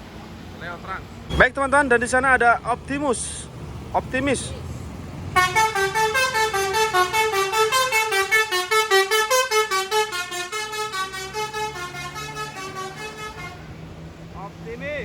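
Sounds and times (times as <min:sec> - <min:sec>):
musical air horn tune: 0:05.4 - 0:13.7.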